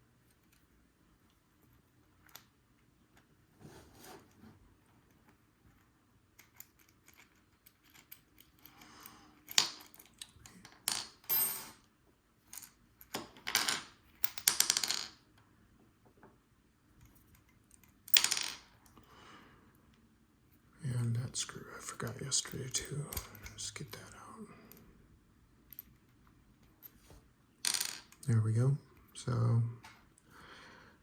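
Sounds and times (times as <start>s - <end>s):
small metal parts clicking and clinking: 6.4s - 11.8s.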